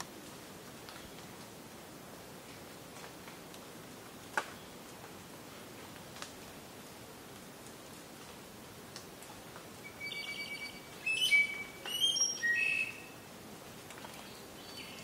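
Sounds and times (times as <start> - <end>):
faint steady hiss: 0.0 - 15.0
bird singing clear notes: 9.9 - 13.1.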